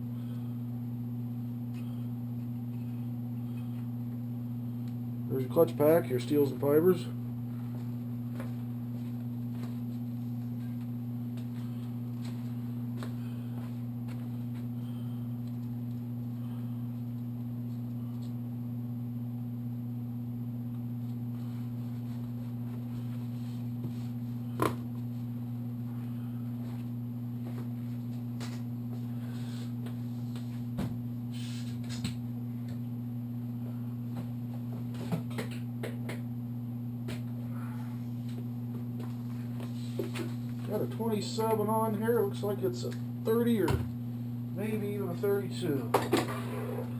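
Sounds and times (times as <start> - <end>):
steady low hum: 0.0 - 46.9.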